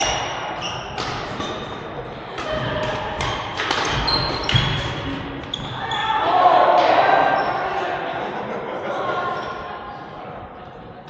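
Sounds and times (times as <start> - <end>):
shoe squeaks: 0.0 - 1.8, 3.9 - 6.2.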